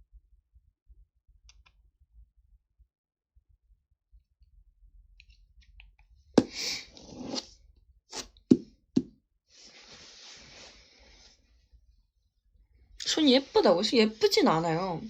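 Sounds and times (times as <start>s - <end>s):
sharp knock on microphone: 8.5s - 9.1s.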